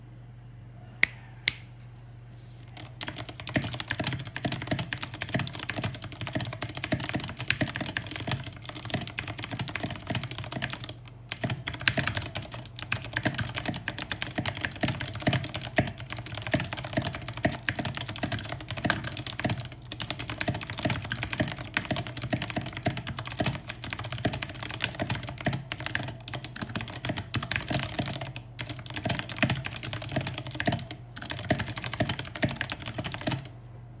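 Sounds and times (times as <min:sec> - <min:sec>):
typing on mechanical keyboard: 0:02.7 - 0:33.5.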